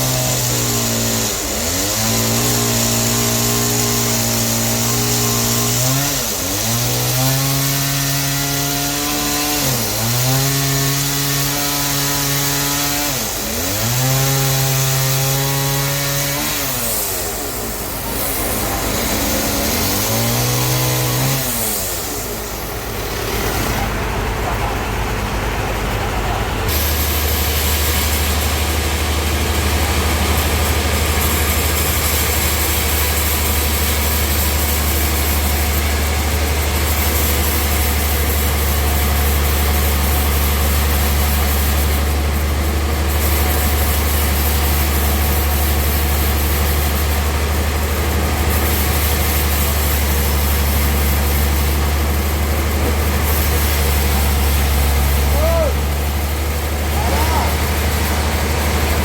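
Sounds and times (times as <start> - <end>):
deep engine hum: 22.4 - 31.1, 50.6 - 59.0.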